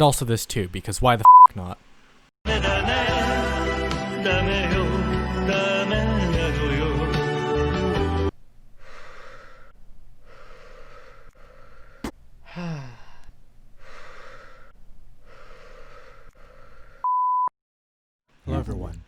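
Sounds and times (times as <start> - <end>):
music: 2.5 - 8.3
person breathing heavily: 8.8 - 17.1.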